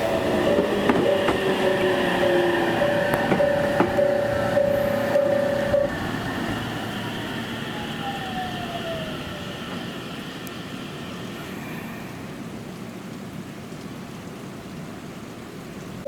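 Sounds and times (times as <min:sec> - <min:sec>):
electric train motor whine: 0:00.0 - 0:11.6
beeping warning tone: 0:00.1 - 0:06.3.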